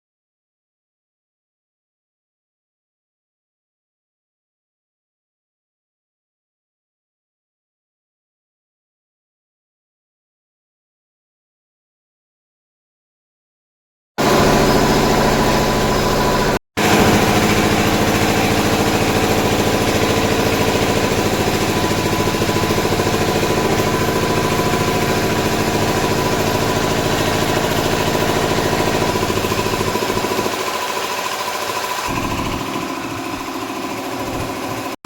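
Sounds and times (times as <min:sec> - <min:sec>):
engine idling: 0:14.2 - 0:35.0.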